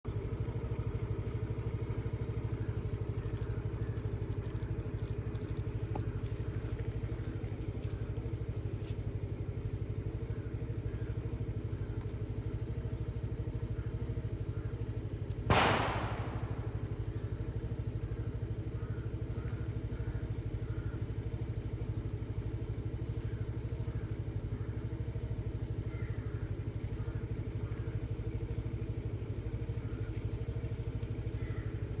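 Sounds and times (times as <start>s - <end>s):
engine idling: 0.0s - 32.0s
loud thud: 15.5s - 16.8s.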